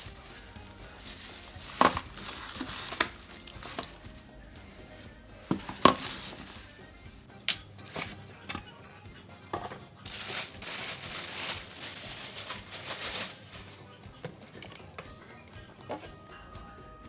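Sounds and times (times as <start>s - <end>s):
packaging rustling: 0.0s - 7.0s, 7.8s - 8.6s, 9.6s - 13.8s
faint background music: 0.0s - 17.0s.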